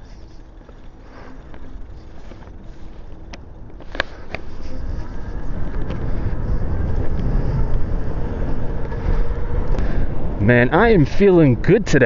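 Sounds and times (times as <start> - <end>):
road noise: 0.0 - 12.0
wind rumble on microphone: 0.0 - 12.0.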